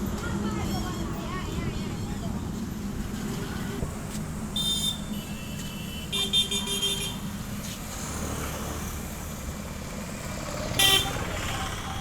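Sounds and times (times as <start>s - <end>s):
traffic engine rumble: 0.0s - 12.0s
vehicle horn short beeps: 10.8s - 11.8s.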